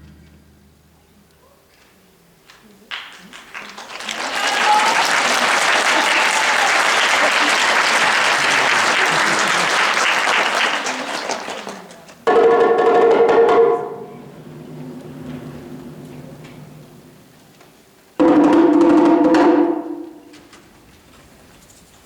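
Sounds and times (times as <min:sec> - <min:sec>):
audience applause: 0:02.9 - 0:12.2.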